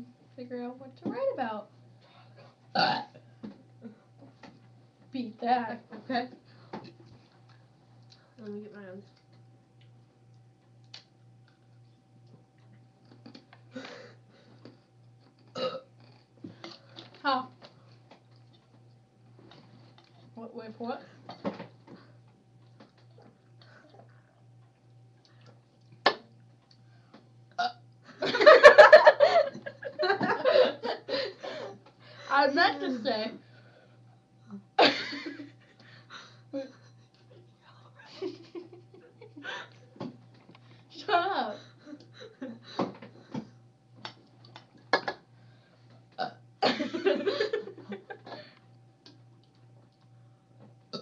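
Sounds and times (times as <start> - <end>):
long loud burp: 2.7 - 3.2, 15.5 - 15.9, 27.6 - 27.8.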